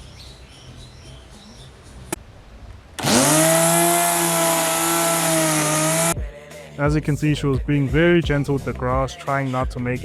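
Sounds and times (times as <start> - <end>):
trimmer motor whine: 3.0 - 6.2.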